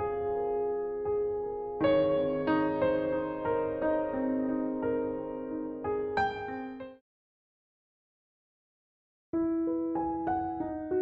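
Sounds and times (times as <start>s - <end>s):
soft keyboard melody: 0.0s - 7.0s, 9.4s - 11.0s.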